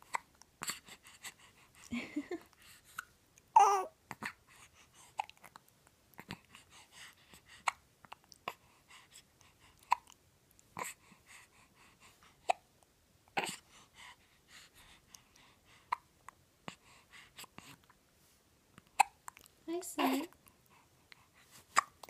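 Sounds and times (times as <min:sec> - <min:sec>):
baby hiccupping: 0:19.0 - 0:19.4, 0:21.7 - 0:22.0.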